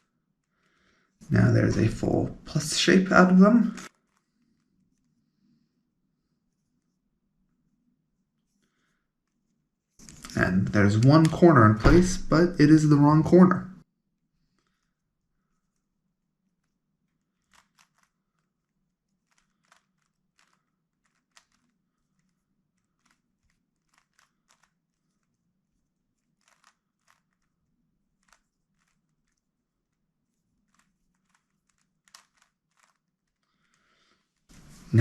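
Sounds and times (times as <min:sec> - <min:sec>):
puzzle cube layers clicking: 0:01.7 - 0:05.1, 0:10.0 - 0:13.0, 0:16.6 - 0:33.7.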